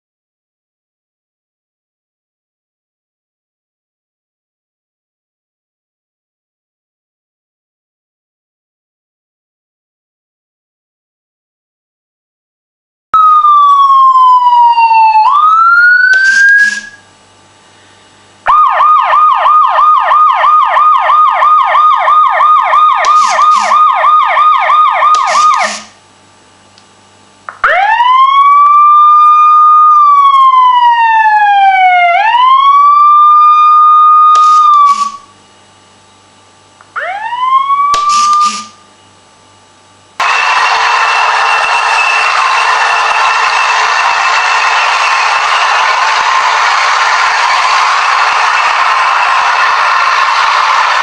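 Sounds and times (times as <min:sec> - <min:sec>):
electronic siren wail and yelp: 0:13.2 - 0:17.0, 0:18.5 - 0:25.9, 0:27.6 - 0:35.3, 0:37.0 - 0:38.8
short siren blasts: 0:13.2 - 0:17.0, 0:18.5 - 0:25.9, 0:27.6 - 0:35.3, 0:37.0 - 0:38.8.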